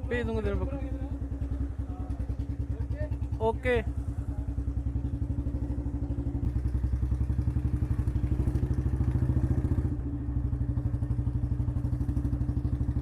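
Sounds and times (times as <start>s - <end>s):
single-cylinder motorcycle engine: 0.0s - 13.0s.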